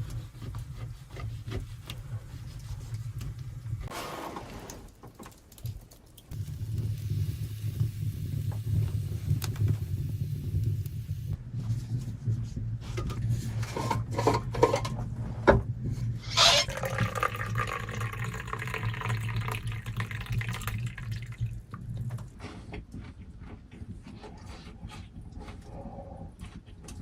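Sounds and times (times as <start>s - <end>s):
constant low hum: 5.2s - 27.0s
liquid pouring into container: 16.4s - 21.8s.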